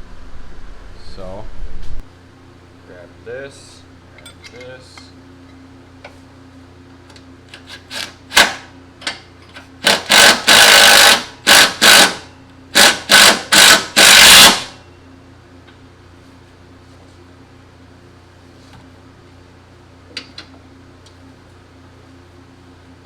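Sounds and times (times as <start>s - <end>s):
power tool trigger bursts: 7.9s - 8.7s, 9.8s - 14.8s.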